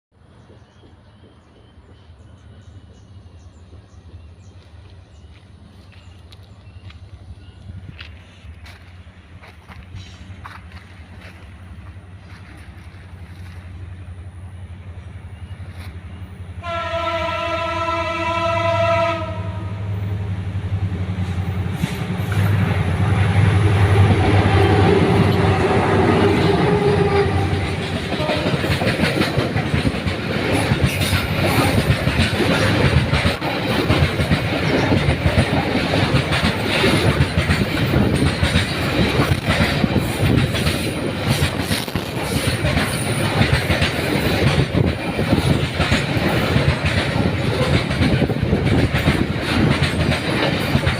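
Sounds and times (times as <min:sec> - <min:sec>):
train low rumble: 0:00.1 - 0:50.9
train wheels clattering on rails: 0:07.8 - 0:14.1, 0:21.1 - 0:50.9
train horn blast: 0:16.6 - 0:20.1, 0:23.2 - 0:28.8.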